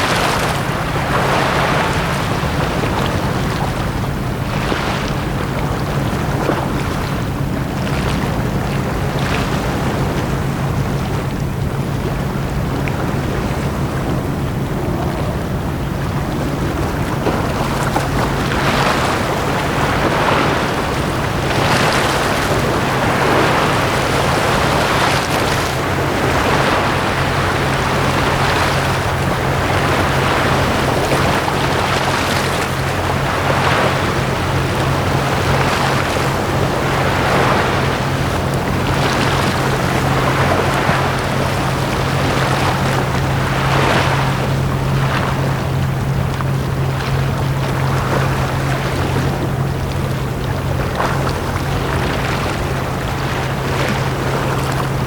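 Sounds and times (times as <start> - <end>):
small waves washing ashore: 0.0 - 55.0
steady low hum: 0.0 - 55.0.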